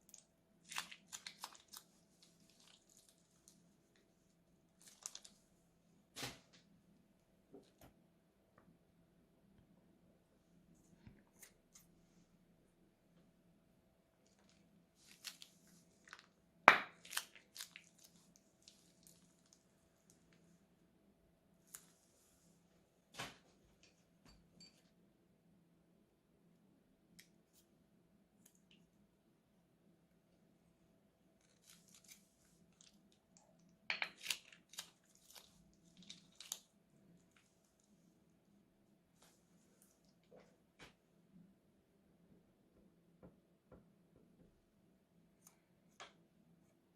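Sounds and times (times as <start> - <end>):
slime crackling and popping: 0.0 - 3.4
crunchy slime being squished: 0.0 - 3.7, 4.8 - 5.4, 14.3 - 19.6, 34.1 - 36.8.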